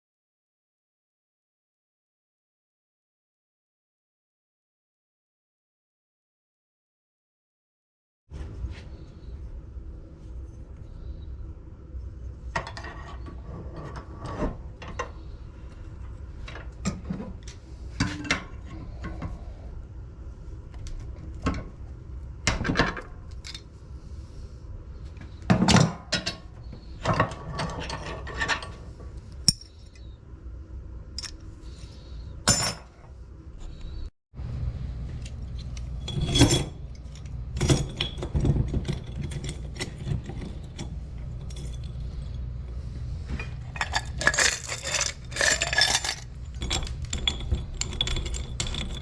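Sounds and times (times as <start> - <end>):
low background hum: 8.3 - 49.0
metal scrap clanking: 43.7 - 47.2.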